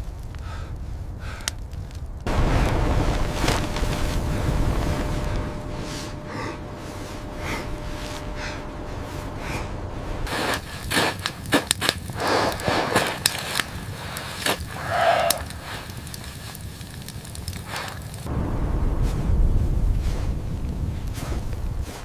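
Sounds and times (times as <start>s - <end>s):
low rumble: 0.2s - 14.9s, 18.2s - 22.0s
person breathing hard: 0.4s - 1.6s, 5.6s - 11.2s.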